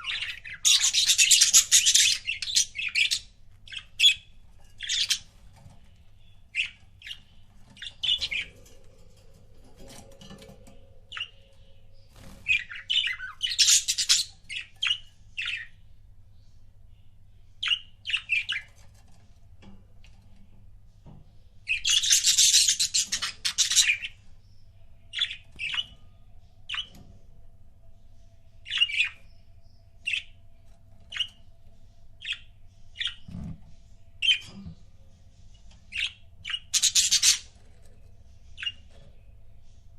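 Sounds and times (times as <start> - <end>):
budgerigars chirping: 0.0 - 5.4, 6.2 - 8.6, 12.4 - 15.8, 21.7 - 26.0, 28.6 - 30.3, 35.6 - 37.6.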